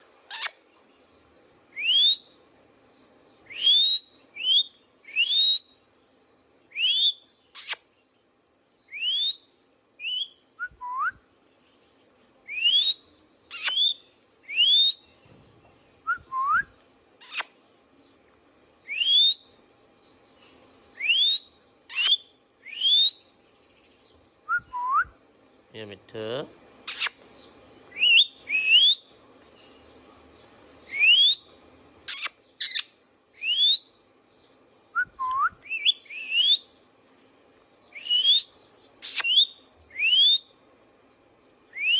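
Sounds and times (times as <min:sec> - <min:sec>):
parakeet shrill squawks: 0:00.3 - 0:00.6, 0:06.9 - 0:07.8, 0:13.5 - 0:14.0, 0:21.9 - 0:22.2, 0:26.9 - 0:27.2, 0:32.1 - 0:32.9, 0:38.1 - 0:39.5
parakeet rising whistles: 0:21.0 - 0:23.2, 0:38.0 - 0:40.4.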